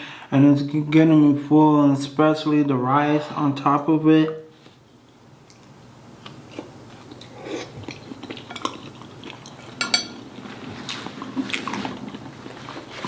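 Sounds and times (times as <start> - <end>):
chewing and biting: 5.5 - 9.8, 10.4 - 13.0.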